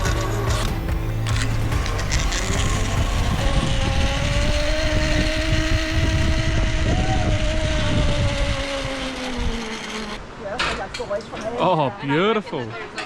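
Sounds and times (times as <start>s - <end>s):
pulley wheels whining on cable: 0.0s - 10.2s
low rumble of wind: 1.2s - 11.6s.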